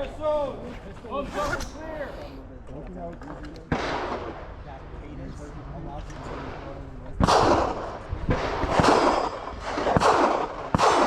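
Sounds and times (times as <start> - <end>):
loud gunshots with echo: 3.7 - 4.6, 7.2 - 11.0.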